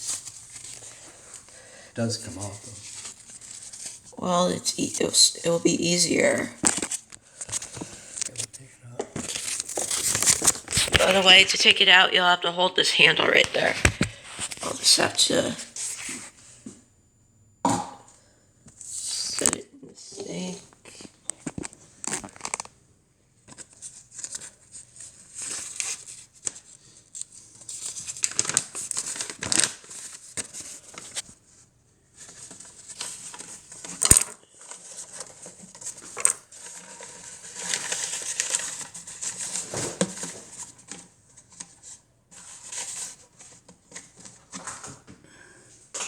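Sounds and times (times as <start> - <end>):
rustling and handling of parts: 0.0 - 1.5, 2.3 - 4.1, 6.6 - 11.2, 23.4 - 45.2.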